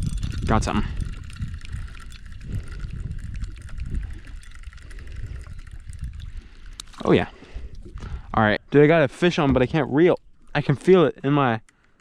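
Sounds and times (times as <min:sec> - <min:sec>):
low rumble: 0:00.0 - 0:08.7
water lapping around a kayak: 0:01.0 - 0:08.3.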